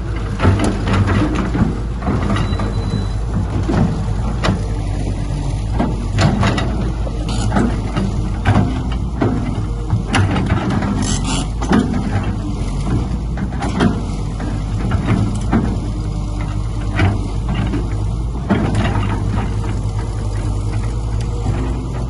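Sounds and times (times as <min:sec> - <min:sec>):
diesel earthmoving machine running: 0:00.0 - 0:22.0
metallic clanks and squeaks: 0:02.2 - 0:03.3, 0:06.5 - 0:07.8, 0:10.4 - 0:11.8.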